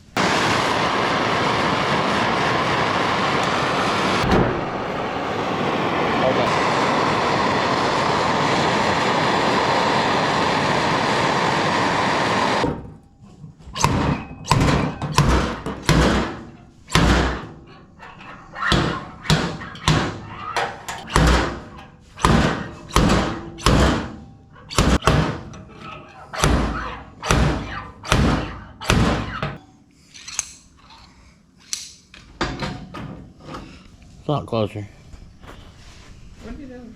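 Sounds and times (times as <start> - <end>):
heating torch hissing: 0.0 - 12.6.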